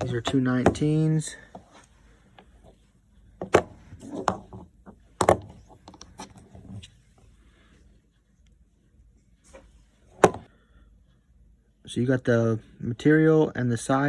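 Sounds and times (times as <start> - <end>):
metal sockets clinking on hard surface: 3.4 - 6.9.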